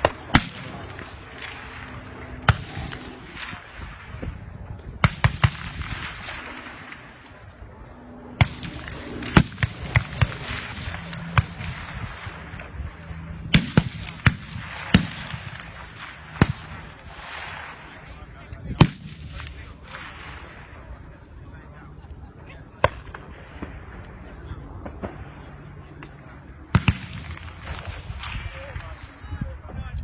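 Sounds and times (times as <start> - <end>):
rifle shots: 0.0 - 4.3, 5.0 - 7.4, 8.3 - 20.8, 26.7 - 29.2.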